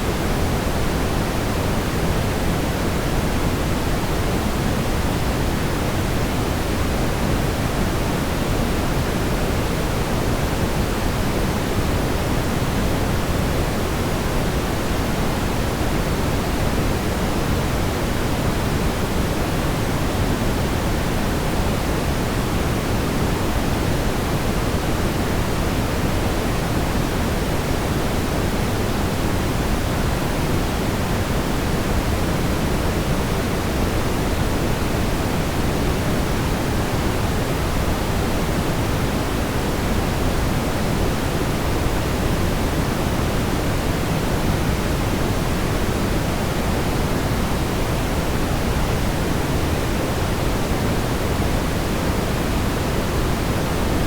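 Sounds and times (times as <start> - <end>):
brown noise hiss: 0.0 - 54.0.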